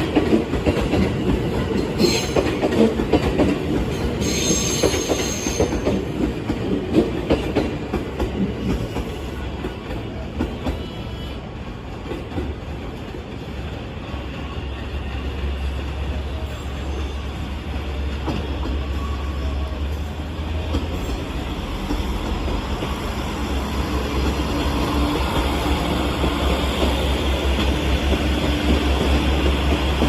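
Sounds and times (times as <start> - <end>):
train wheels rumbling on rail: 0.0 - 30.0.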